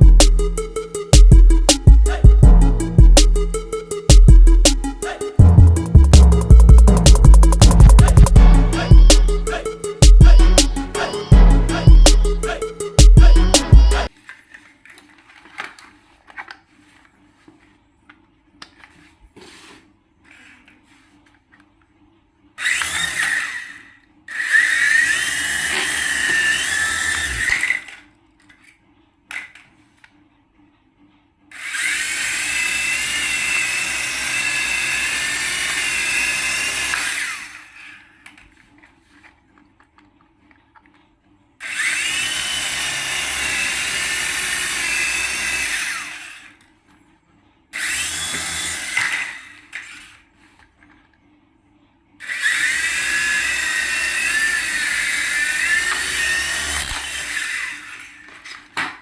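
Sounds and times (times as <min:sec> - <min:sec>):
small electric motor whining: 0:22.6 - 0:28.0, 0:41.6 - 0:46.6, 0:52.2 - 0:58.4.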